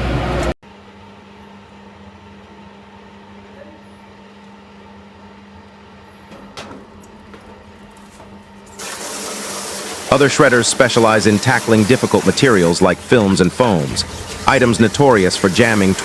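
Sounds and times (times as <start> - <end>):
steady low machine hum: 0.0 - 16.0
loud machine noise: 6.2 - 16.0.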